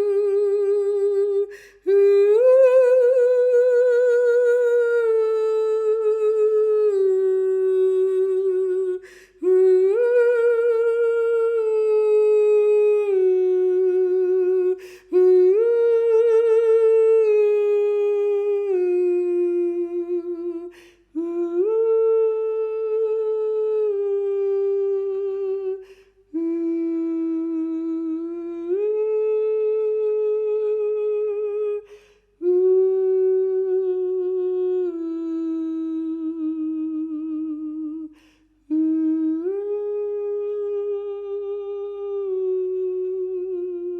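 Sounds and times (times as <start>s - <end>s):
person humming with vibrato: 0.0s - 43.9s
breaths: 1.5s - 1.9s, 9.0s - 9.4s, 14.8s - 15.1s, 20.7s - 21.2s, 25.8s - 26.3s, 31.8s - 32.4s, 38.1s - 38.7s.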